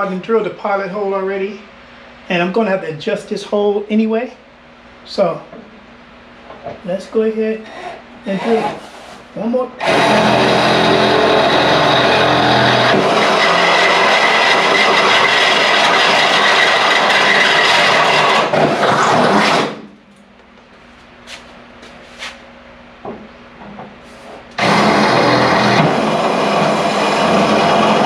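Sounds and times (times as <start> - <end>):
power drill boring through metal: 7.7 - 8.8, 9.8 - 19.8, 24.6 - 28.0.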